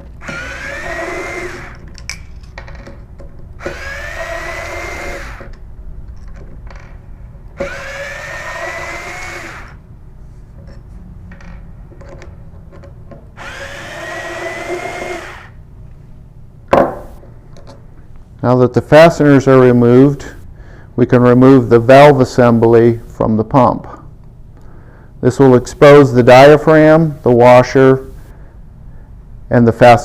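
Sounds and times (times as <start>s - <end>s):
power screwdriver whine: 0.2s - 1.8s, 3.6s - 5.6s, 7.6s - 9.8s, 13.4s - 15.6s.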